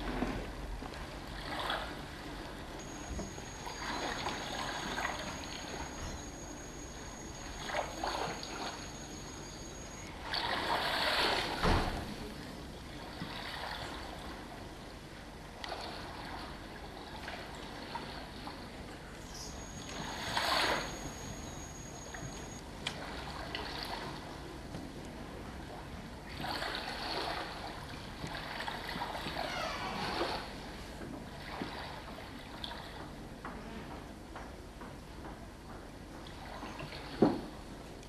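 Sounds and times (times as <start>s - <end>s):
water surging: 0.0s - 24.5s, 26.2s - 30.7s
sea water lapping and splashing: 0.0s - 33.9s, 36.2s - 38.0s.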